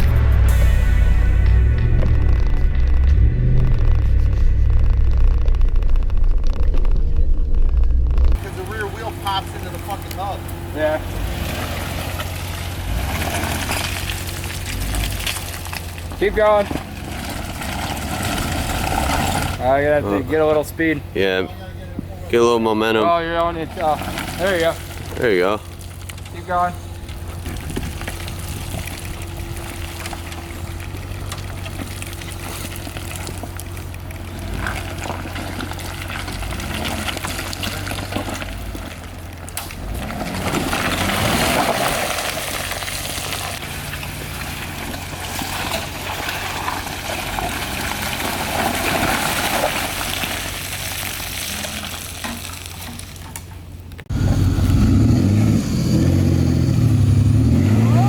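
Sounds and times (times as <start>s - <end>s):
engine running at low revs: 0.0s - 21.3s, 54.1s - 58.0s
tyres crunching on dirt and rock: 0.0s - 55.4s.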